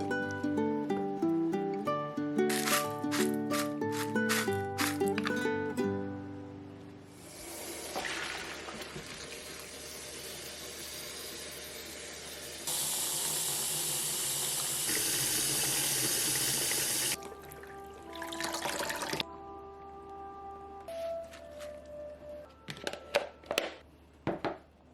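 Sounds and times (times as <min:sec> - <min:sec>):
tap running water into sink: 0:07.6 - 0:09.7.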